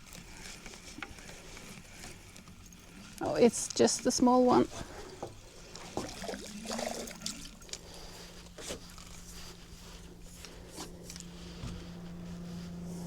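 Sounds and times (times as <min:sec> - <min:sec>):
water sloshing: 0:00.8 - 0:09.2
low hum: 0:07.5 - 0:13.0.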